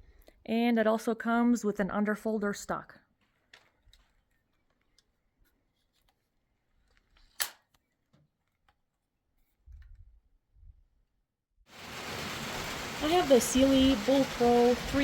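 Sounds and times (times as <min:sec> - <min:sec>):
rifle handling clicks: 0:07.2 - 0:07.8.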